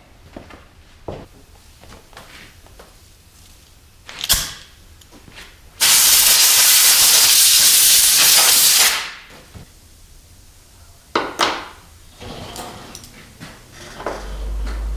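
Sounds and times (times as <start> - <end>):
loud steady hiss: 5.7 - 11.2.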